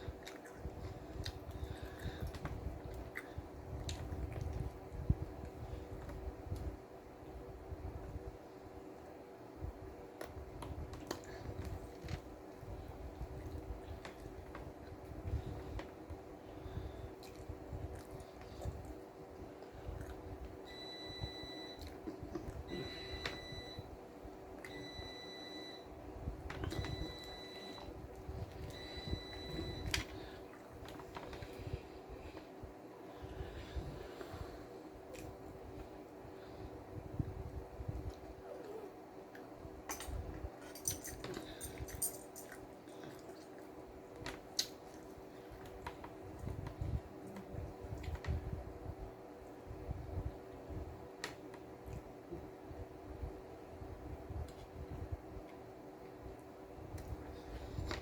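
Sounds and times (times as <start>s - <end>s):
crunching and chewing: 0.0s - 4.8s
chewing and crunching food: 0.0s - 6.7s, 10.2s - 20.6s, 40.2s - 48.5s
faint steady hum: 0.0s - 58.0s.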